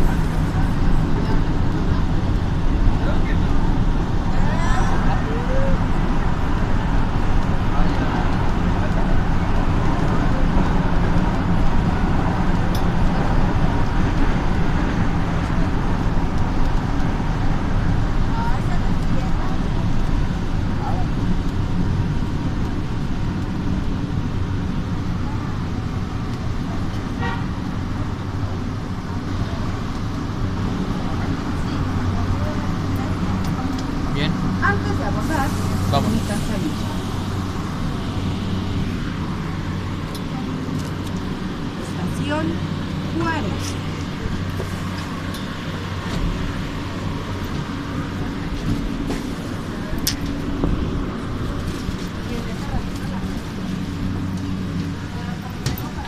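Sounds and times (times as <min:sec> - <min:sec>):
light-rail train rumbling: 0:00.0 - 0:56.0
short train horn toot: 0:27.2 - 0:27.6.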